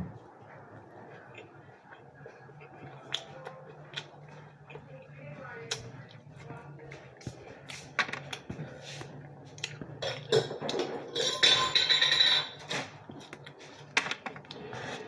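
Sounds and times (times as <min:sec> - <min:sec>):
chewing: 0:00.2 - 0:10.3.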